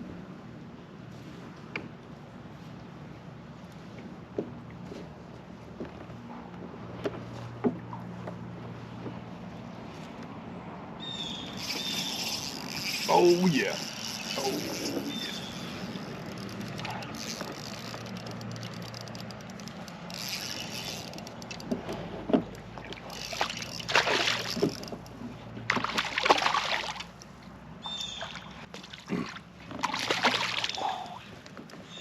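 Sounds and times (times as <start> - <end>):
fish thrashing and splashing: 11.4 - 21.9, 22.5 - 27.2, 28.2 - 31.4.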